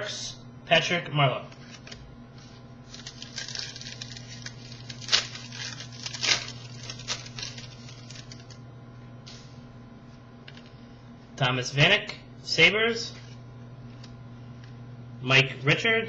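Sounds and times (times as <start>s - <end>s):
trading cards rustling and sliding: 1.5s - 8.6s.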